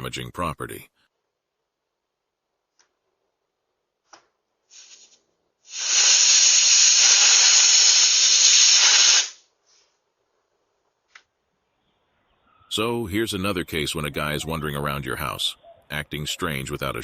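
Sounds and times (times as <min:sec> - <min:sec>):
air hissing out of tire: 0:04.7 - 0:09.5.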